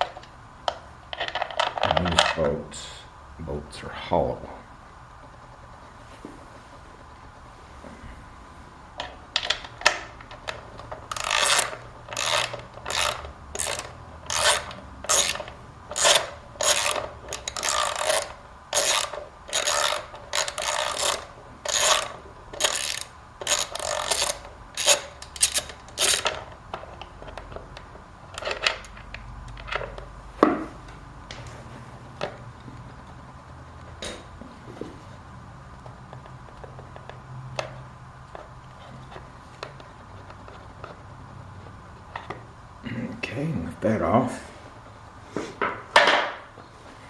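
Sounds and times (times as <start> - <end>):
ratchet wrench rasping strokes: 10.5 - 26.5.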